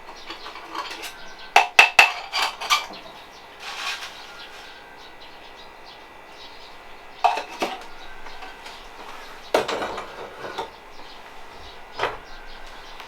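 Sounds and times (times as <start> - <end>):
dishes and utensils clinking: 0.0 - 4.2, 7.2 - 10.8.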